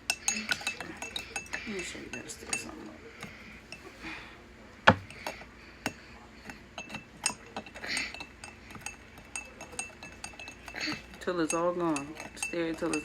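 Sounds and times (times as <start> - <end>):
spoon clinking against cup: 0.0 - 2.8, 6.8 - 13.0.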